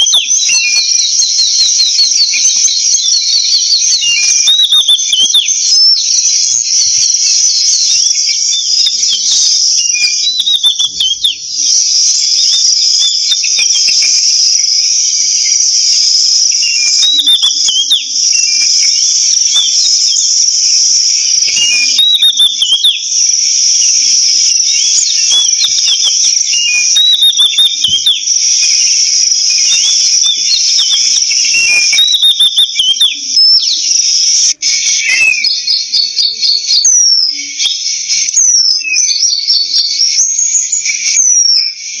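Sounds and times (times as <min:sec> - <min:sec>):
insect chorus: 0:00.0 - 0:36.2
bird whistling phrases: 0:00.0 - 0:42.0.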